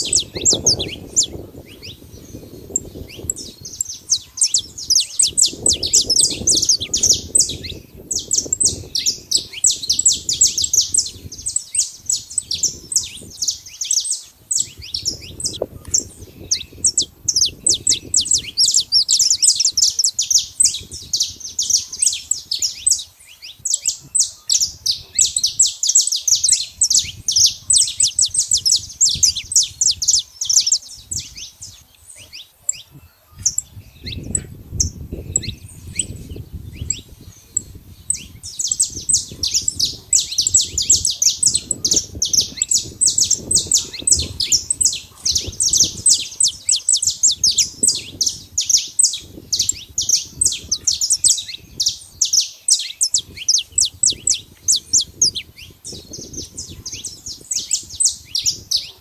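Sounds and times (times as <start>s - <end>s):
finch singing chips and trills: 0.0s - 59.0s.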